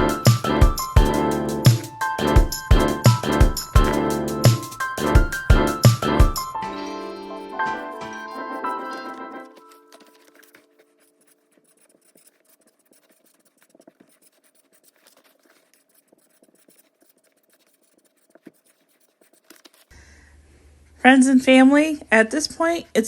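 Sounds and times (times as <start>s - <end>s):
music: 0.0s - 10.3s
pen scratching on paper: 0.0s - 19.9s.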